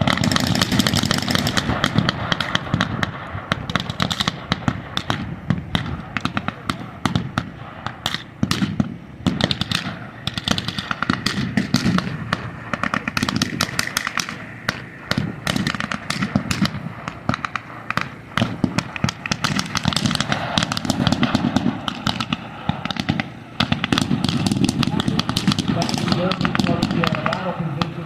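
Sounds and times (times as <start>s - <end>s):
gunfire crackle: 0.0s - 28.0s.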